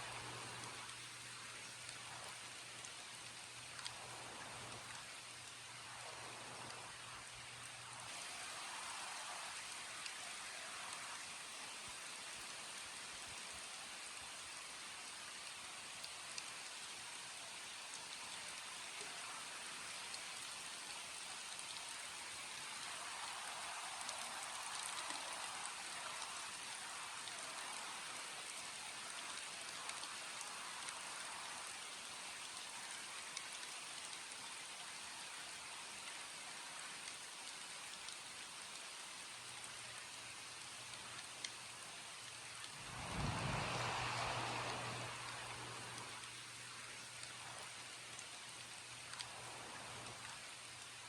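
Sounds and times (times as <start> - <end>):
steady rain falling: 0.0 - 51.0
faint low hum: 39.6 - 51.0.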